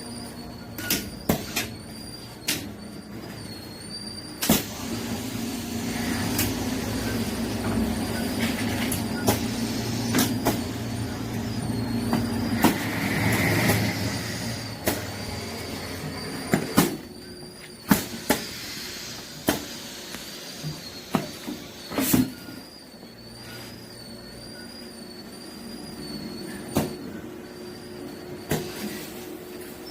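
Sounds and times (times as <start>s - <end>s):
air hiss: 4.4s - 7.8s, 8.6s - 17.0s, 17.8s - 22.6s.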